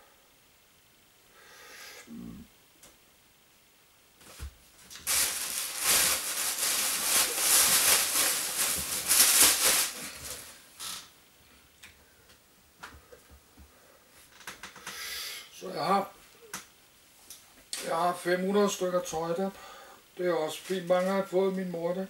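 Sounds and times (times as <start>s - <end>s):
clothes rustling: 4.2s - 11.0s.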